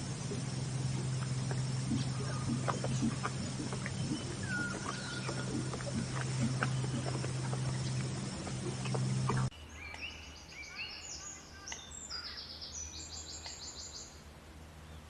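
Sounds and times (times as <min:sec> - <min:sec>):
steady low hum: 0:00.0 - 0:09.7.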